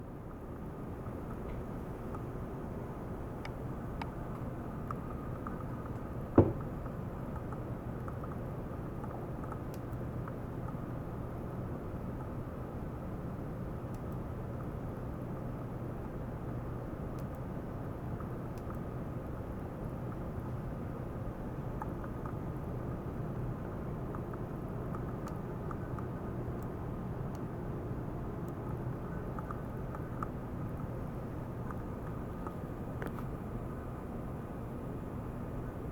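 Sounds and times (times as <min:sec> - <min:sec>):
sharp knock: 0:06.4 - 0:06.6
faint ticks: 0:07.3 - 0:10.8, 0:13.8 - 0:14.8, 0:17.1 - 0:17.5, 0:18.5 - 0:19.5, 0:24.0 - 0:27.5, 0:28.4 - 0:31.0.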